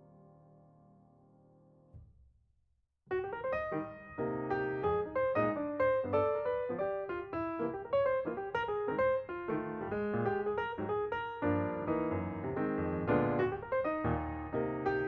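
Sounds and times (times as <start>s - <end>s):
piano background music: 3.1s - 15.0s.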